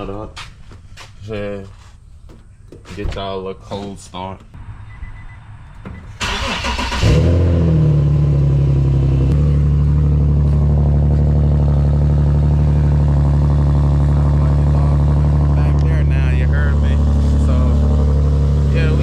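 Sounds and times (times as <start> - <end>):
car engine cold idling: 5.7 - 19.0
engine starter cranking: 6.1 - 7.5.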